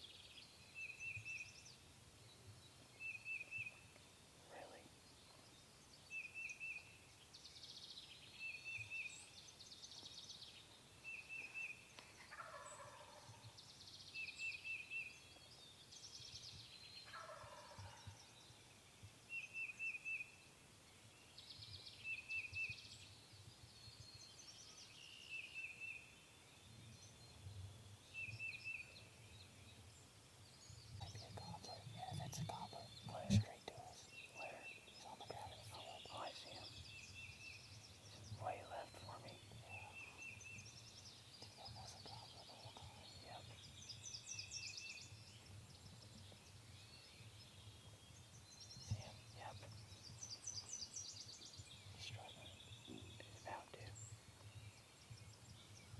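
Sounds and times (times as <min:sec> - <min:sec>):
faint turkeys gobbling: 0:12.2 - 0:13.4, 0:17.1 - 0:18.0.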